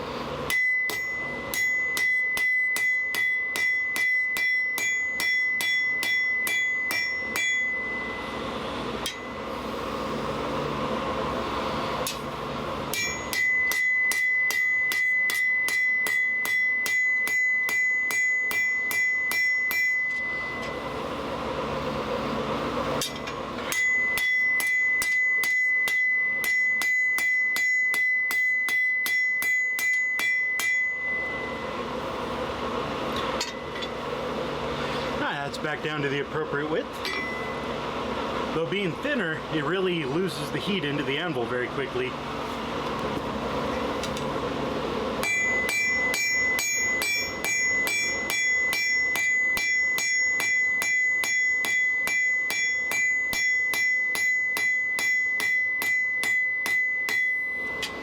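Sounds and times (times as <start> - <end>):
hammer striking steel on anvil: 0.4 - 9.5, 12.0 - 21.0, 23.0 - 32.0, 33.1 - 34.1, 37.0 - 37.7, 45.2 - 58.0.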